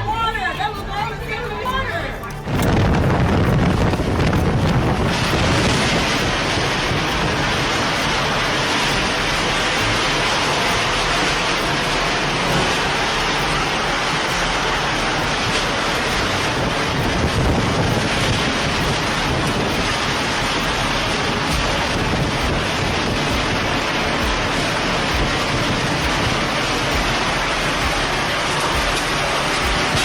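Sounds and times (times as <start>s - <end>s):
wind rushing: 0.0s - 30.0s
heavy rain: 2.3s - 30.0s.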